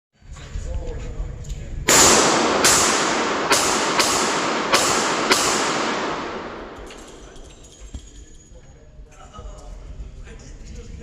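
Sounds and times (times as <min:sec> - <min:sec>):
handgun shots: 0:01.9 - 0:08.1.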